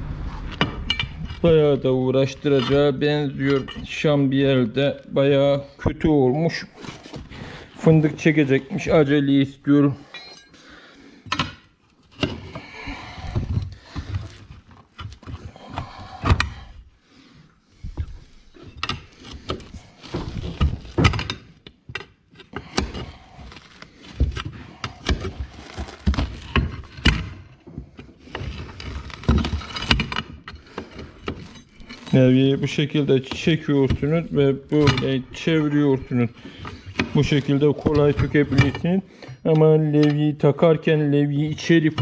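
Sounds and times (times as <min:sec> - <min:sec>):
tyre lever scraping: 0:00.2 - 0:09.2, 0:17.8 - 0:39.0.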